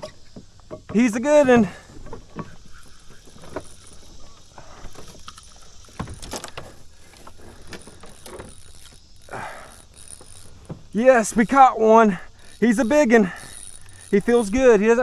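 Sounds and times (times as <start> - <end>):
knocks and clicks in canoe: 0.0 - 11.7
faint steady hiss: 0.0 - 15.0.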